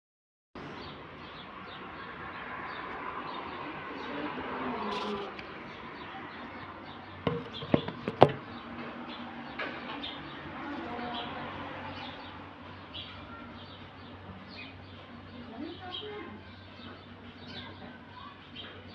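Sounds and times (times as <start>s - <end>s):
sharp knocks: 7.3s - 8.5s.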